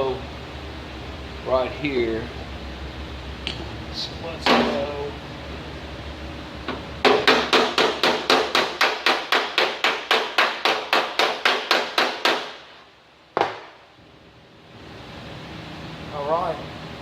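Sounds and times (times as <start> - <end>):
hammer tapping sheet metal: 7.0 - 12.7.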